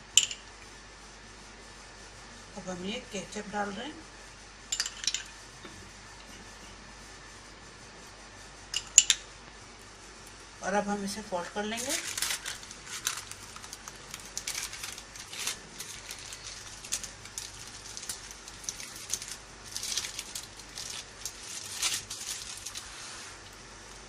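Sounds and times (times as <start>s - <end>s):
paper crinkling and rustling: 11.7s - 23.6s.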